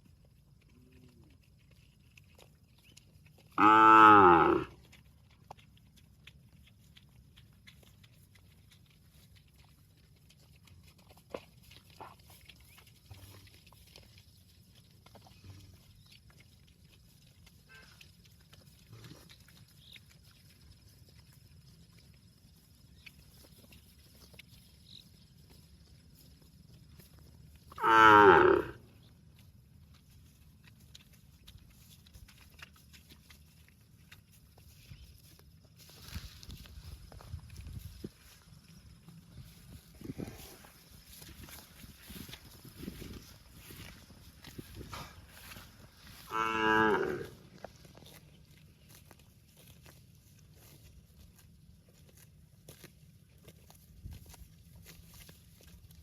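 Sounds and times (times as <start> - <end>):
cow mooing: 3.6 - 4.8, 27.8 - 28.8, 46.2 - 47.4.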